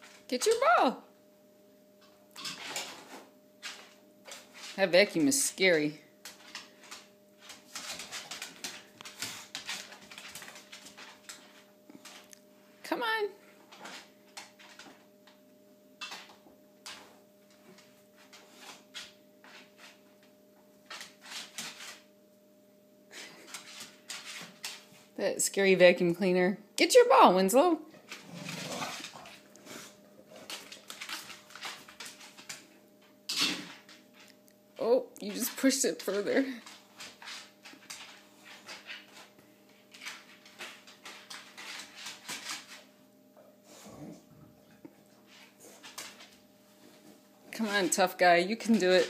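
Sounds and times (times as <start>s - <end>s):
faint steady hum: 0.0s - 49.0s
dog scuffing and rustling: 28.0s - 32.8s.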